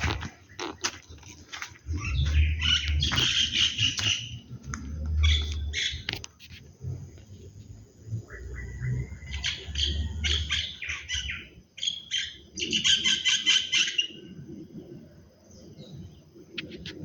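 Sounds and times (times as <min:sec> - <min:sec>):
birds chirping: 0:00.0 - 0:06.2, 0:07.2 - 0:14.4.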